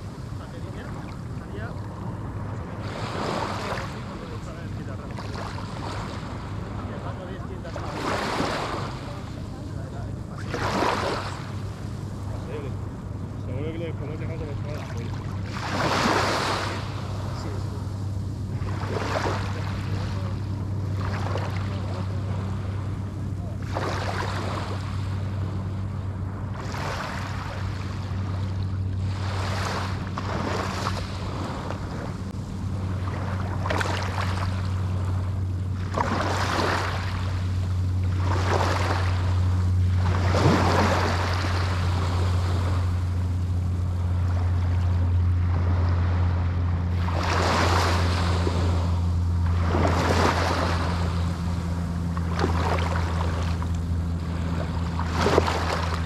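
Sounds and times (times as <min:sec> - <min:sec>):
small waves washing on sand: 0:00.0 - 0:56.0
steady low hum: 0:00.0 - 0:56.0.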